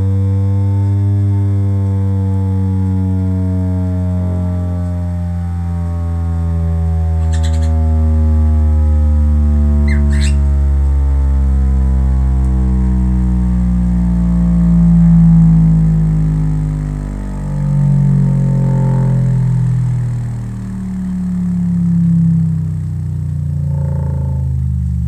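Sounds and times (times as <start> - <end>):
deep synthesized bass tones: 2.3 - 25.0
high electronic chirps: 7.2 - 7.8, 9.9 - 10.5.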